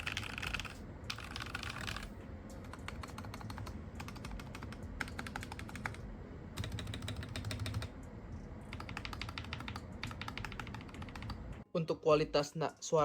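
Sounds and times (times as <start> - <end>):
fast typing on keyboard: 0.0 - 6.0, 6.6 - 8.0, 8.7 - 11.5.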